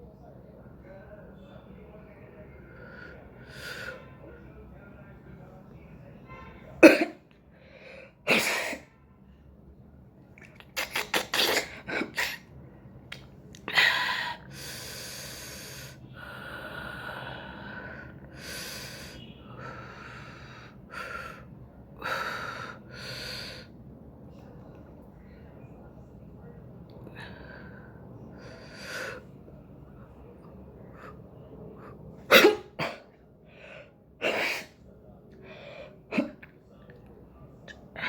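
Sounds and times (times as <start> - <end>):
heavy noisy breathing: 2.4 - 4.4, 7.4 - 8.3, 13.6 - 24.0, 26.8 - 37.1
person sneezing: 8.3 - 8.8, 10.8 - 12.5, 32.2 - 33.1, 34.2 - 34.7, 36.1 - 36.5.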